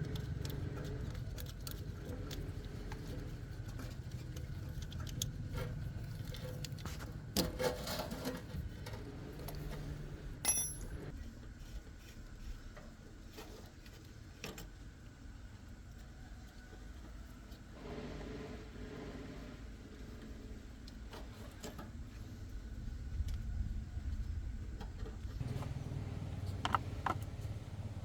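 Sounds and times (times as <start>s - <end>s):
metal tools clinking and knocking: 10.4s - 11.1s
ringing metallic clink: 10.4s - 11.1s.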